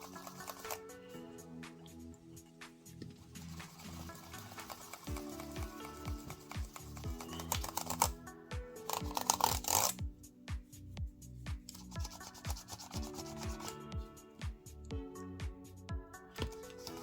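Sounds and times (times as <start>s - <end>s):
cloth scrubbing keyboard keys: 0.0s - 0.8s, 3.0s - 8.2s, 8.8s - 10.0s, 11.6s - 13.9s, 16.4s - 17.0s
background music with drum beat: 0.0s - 17.0s.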